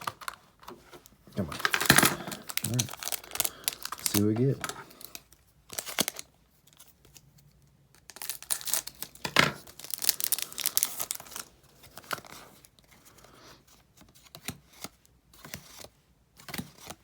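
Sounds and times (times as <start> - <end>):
wrapper tearing and crinkling: 1.4 - 6.9, 8.0 - 12.4.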